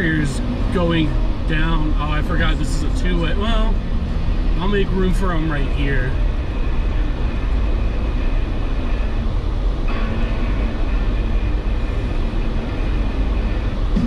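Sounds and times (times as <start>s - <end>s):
car engine low rumble: 0.0s - 14.0s.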